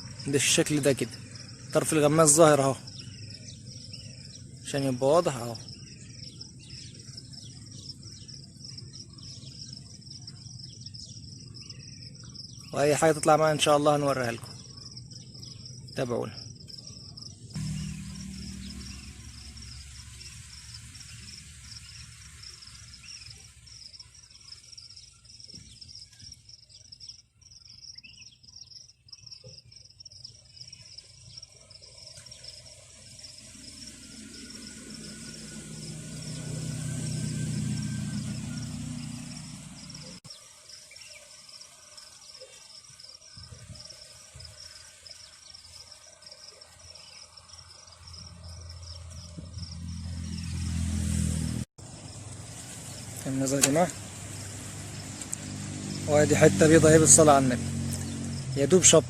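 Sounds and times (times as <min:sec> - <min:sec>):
insects chirring: 0:00.0 - 0:50.6, 0:51.8 - 0:59.0
low hum: 0:16.6 - 0:24.1, 0:32.5 - 0:40.2.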